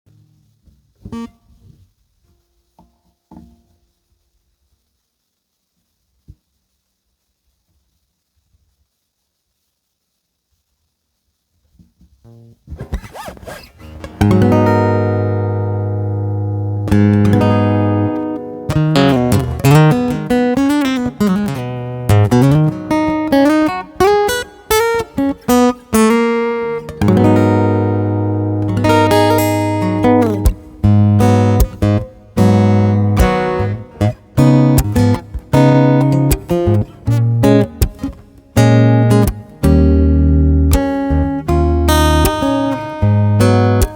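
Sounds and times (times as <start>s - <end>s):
acoustic guitar playing: 1.0s - 1.8s, 12.2s - 43.9s.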